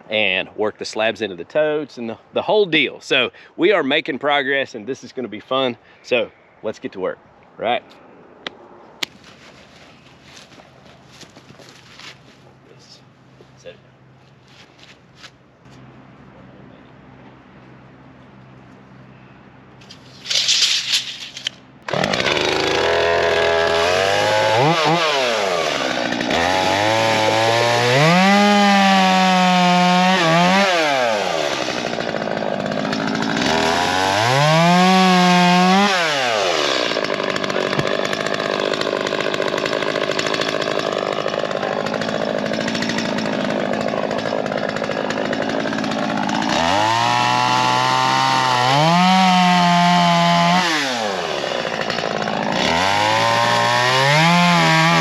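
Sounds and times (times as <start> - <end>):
chainsaw starting and revving: 21.8 - 55.0.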